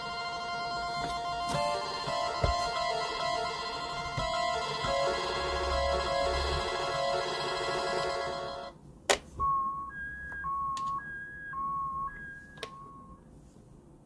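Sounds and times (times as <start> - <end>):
bright synthesized electronic loop: 0.0 - 8.7
two-note electronic beeps: 9.4 - 13.2.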